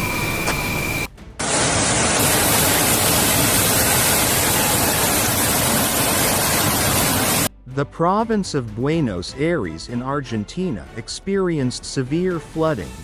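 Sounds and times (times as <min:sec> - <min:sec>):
hiss: 0:01.4 - 0:07.5
loud rush of water: 0:01.4 - 0:07.5.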